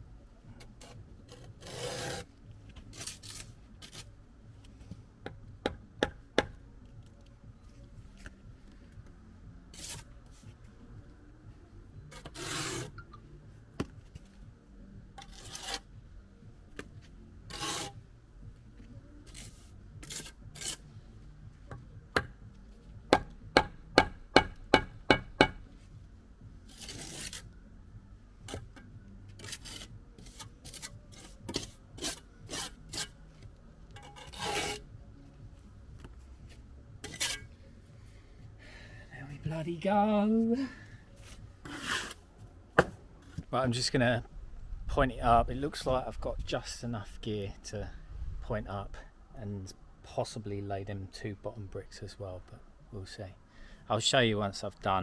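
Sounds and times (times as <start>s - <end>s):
trowel scraping mortar: 0.8s - 2.3s, 2.9s - 4.1s, 9.7s - 10.1s, 12.1s - 13.0s, 15.2s - 15.9s, 17.5s - 18.0s, 19.3s - 20.8s, 26.7s - 27.5s, 29.4s - 33.2s, 34.0s - 34.9s, 37.0s - 37.5s, 41.6s - 42.2s.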